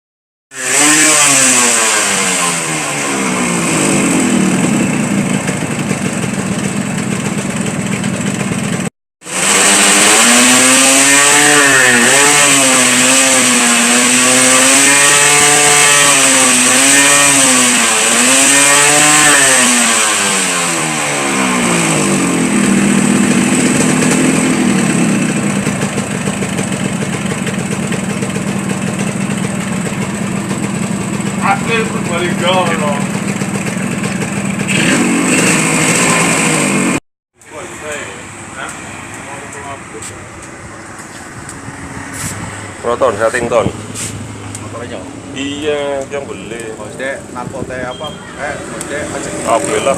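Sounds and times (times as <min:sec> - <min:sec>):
two-stroke engine revving and idling: 0:00.5 - 0:49.9.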